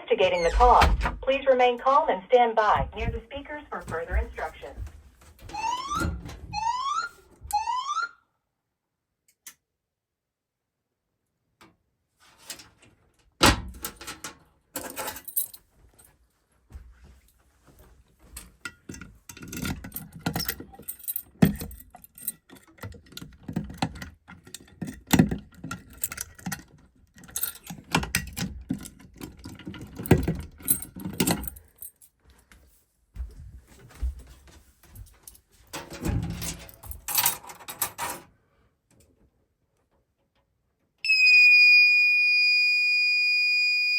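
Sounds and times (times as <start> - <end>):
fire alarm whoop tone: 5.5 - 8.2, 41.0 - 43.9
keys jangling: 14.8 - 15.6, 19.3 - 23.1, 23.7 - 32.2, 34.9 - 38.2
handling clicks and knocks: 18.2 - 32.0, 33.2 - 38.3.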